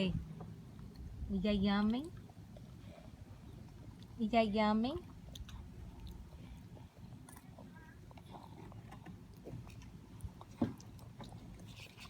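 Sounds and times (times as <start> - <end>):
baby chewing food: 2.0 - 4.2, 5.0 - 12.0.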